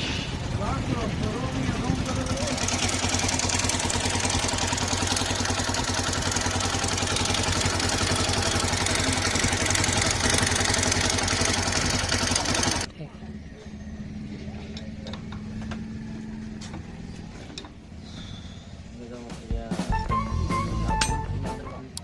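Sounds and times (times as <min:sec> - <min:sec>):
engine mechanical clatter: 0:00.0 - 0:19.7
motorcycle engine idling: 0:00.1 - 0:20.0.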